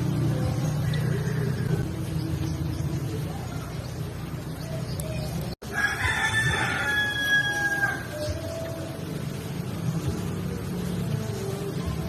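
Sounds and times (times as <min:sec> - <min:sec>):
rooster crowing: 0:00.8 - 0:01.8, 0:05.6 - 0:08.3.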